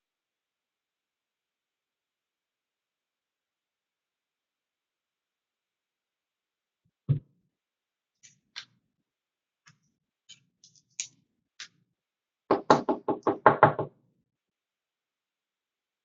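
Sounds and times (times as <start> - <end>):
knocks on a hard surface: 12.5 - 13.9.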